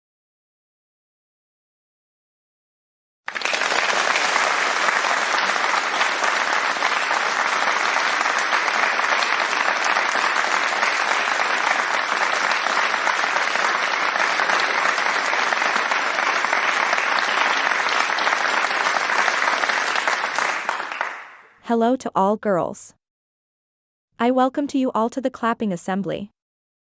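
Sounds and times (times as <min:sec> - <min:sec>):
crowd applause: 0:03.3 - 0:21.6.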